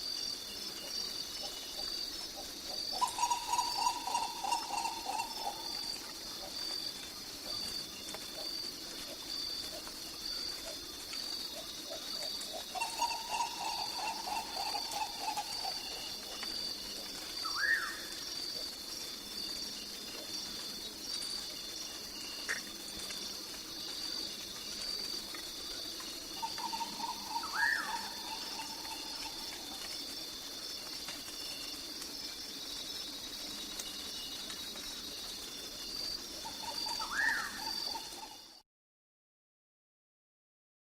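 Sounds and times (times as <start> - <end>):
high-pitched insect chorus: 0.0 - 38.6
low trilling call: 3.0 - 5.7, 26.4 - 29.3.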